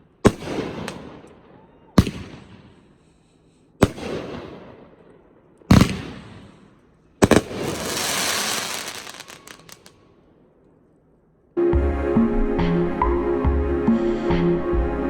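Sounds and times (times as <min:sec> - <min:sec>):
loud firework bangs: 0:05.7 - 0:06.6, 0:07.2 - 0:09.9
firework crackling: 0:07.2 - 0:10.0
music: 0:11.6 - 0:15.0.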